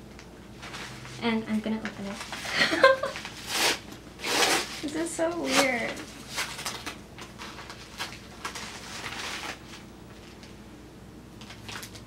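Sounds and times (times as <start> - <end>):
low room hum: 0.0 - 12.0
packaging rustling: 1.8 - 10.6, 11.4 - 12.0.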